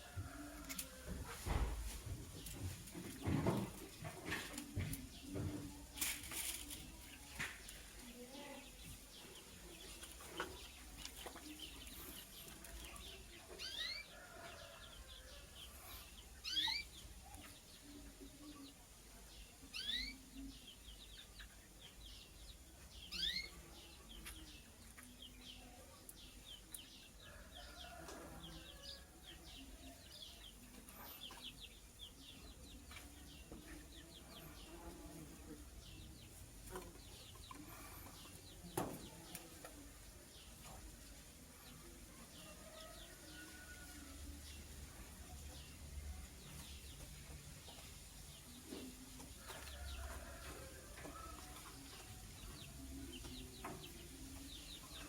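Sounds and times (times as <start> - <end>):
bird chirping: 15.6 - 18.6, 19.7 - 26.8.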